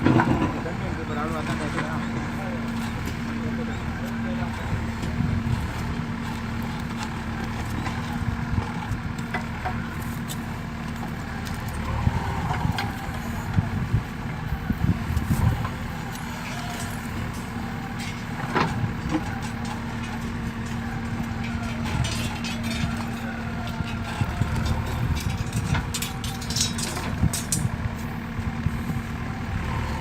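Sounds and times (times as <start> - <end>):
diesel engine running: 0.0 - 30.0.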